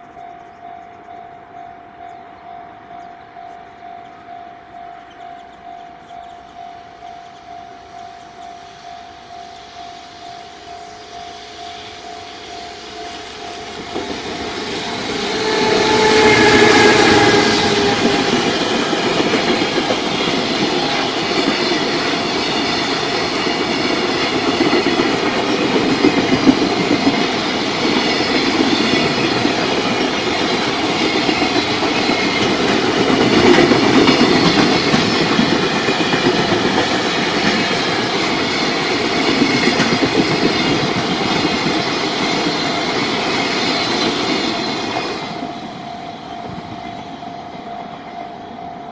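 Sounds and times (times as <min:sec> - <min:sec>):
freight train wheels clattering: 0:10.7 - 0:47.1.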